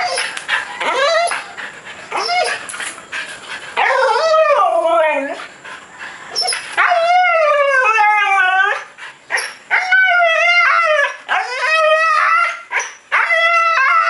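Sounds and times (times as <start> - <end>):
dog howling: 0.0 - 1.5, 6.3 - 8.9, 9.7 - 14.0.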